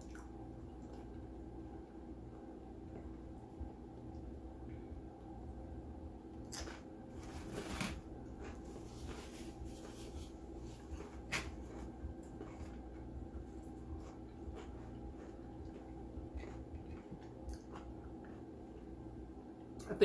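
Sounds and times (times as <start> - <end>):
low room hum: 0.0 - 20.0
food crunches and clicks: 6.4 - 6.9, 11.4 - 18.5.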